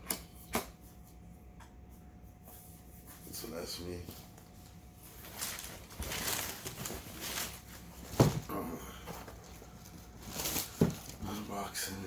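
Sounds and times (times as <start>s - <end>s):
rustling handling noise: 2.6s - 11.7s.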